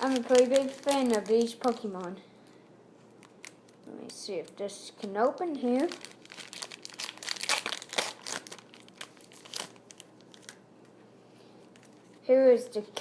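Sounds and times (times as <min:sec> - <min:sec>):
foil wrapper tearing and crinkling: 0:00.0 - 0:02.0, 0:03.1 - 0:10.6.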